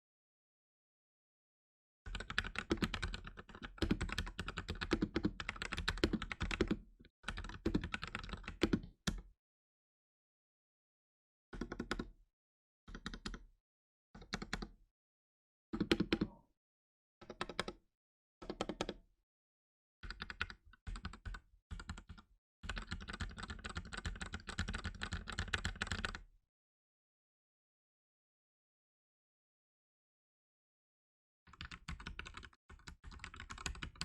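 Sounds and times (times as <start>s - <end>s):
mechanical keyboard typing: 2.1s - 8.9s, 11.6s - 12.1s, 17.2s - 17.8s, 18.4s - 19.0s, 20.1s - 26.2s, 31.5s - 34.0s.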